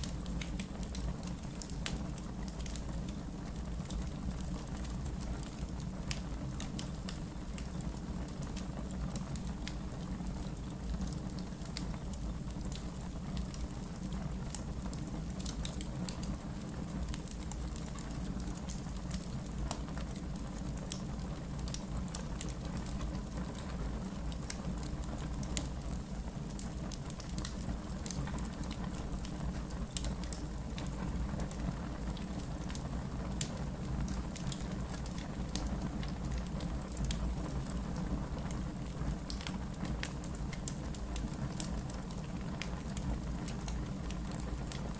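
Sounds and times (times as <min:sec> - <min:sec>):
wood fire crackling: 0:00.0 - 0:44.9.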